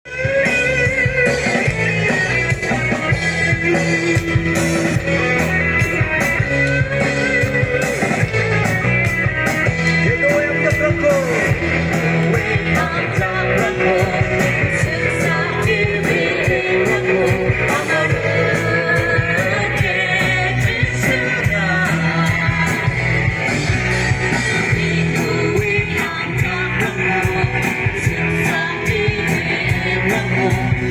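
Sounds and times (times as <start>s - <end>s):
person singing: 0.1s - 8.3s, 9.8s - 30.9s
band playing worship music: 0.1s - 30.9s.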